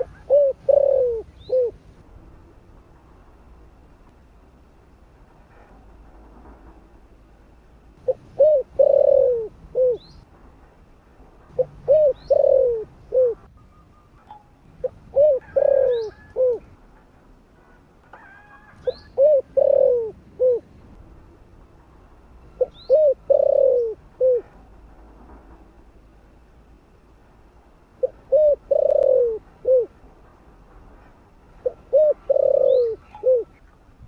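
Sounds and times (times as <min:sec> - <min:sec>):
dove cooing: 0:00.0 - 0:01.8, 0:08.0 - 0:10.1, 0:11.5 - 0:13.5, 0:14.8 - 0:16.7, 0:18.2 - 0:20.7, 0:22.6 - 0:24.6, 0:28.0 - 0:30.0, 0:31.6 - 0:33.6.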